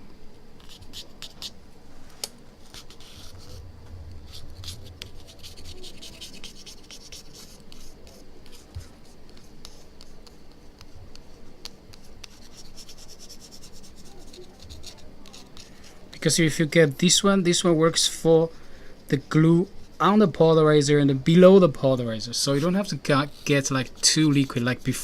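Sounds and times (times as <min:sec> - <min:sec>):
scratchy scraping strokes: 0:02.6 - 0:08.7.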